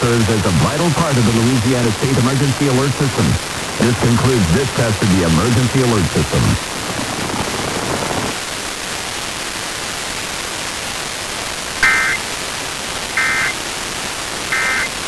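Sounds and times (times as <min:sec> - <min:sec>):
broadcast hiss: 0:00.0 - 0:15.0
warbling data tones: 0:11.8 - 0:12.2, 0:13.2 - 0:13.6, 0:14.5 - 0:15.0.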